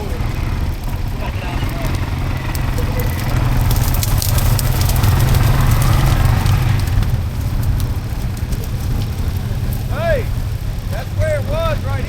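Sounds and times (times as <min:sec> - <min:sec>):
atv engine under load: 0:00.0 - 0:12.0
water and mud splashing: 0:00.0 - 0:12.0.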